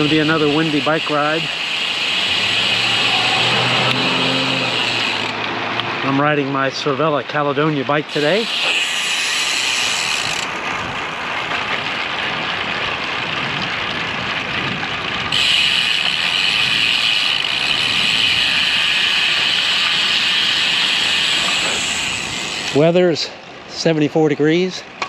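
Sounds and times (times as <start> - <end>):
road noise: 0.0 - 25.0
wind rushing over microphone: 12.3 - 15.4.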